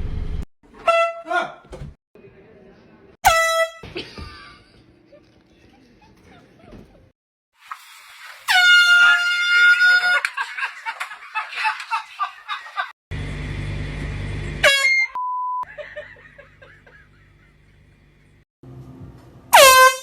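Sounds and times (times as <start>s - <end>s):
air horn blasting: 0.8s - 1.2s, 3.2s - 3.8s, 8.5s - 10.2s, 14.6s - 15.2s, 19.5s - 20.0s.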